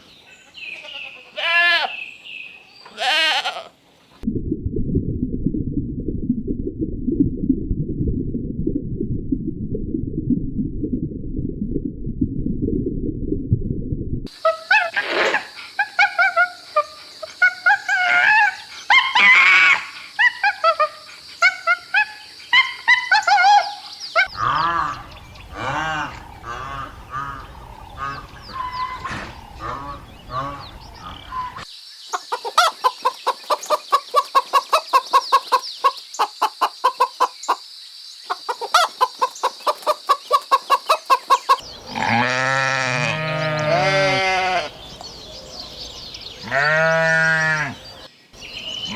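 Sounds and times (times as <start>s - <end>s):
bird-like pitched calls: 21.4s - 37.6s, 38.2s - 41.7s
deep drawn-out animal call: 22.6s - 31.7s, 41.4s - 44.8s
clucking notes: 24.3s - 37.6s, 38.3s - 41.6s.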